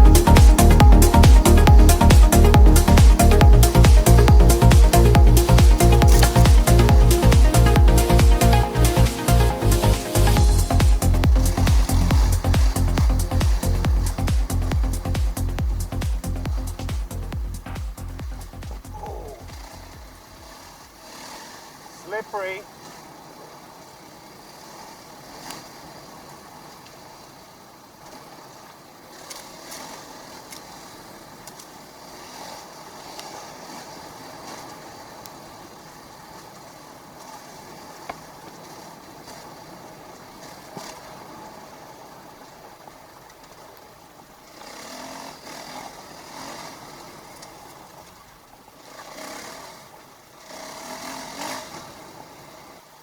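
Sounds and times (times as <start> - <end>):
steady rushing noise: 0.0 - 20.6
motorcycle engine: 0.0 - 20.8.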